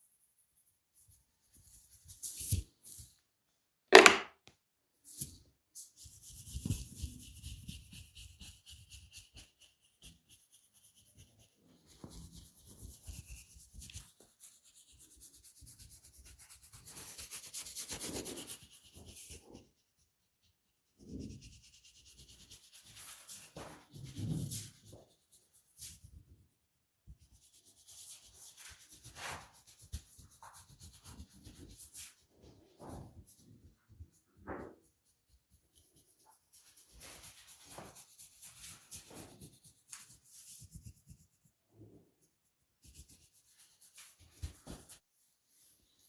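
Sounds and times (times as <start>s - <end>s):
hands rubbing skin: 35.7s - 41.4s, 42.8s - 46.0s.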